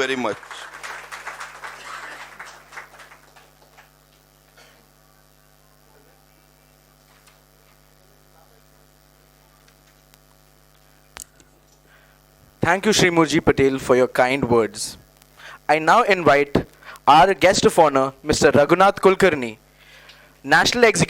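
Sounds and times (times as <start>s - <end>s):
people clapping: 0.0s - 4.6s, 7.0s - 7.8s
electrical mains hum: 0.0s - 21.0s.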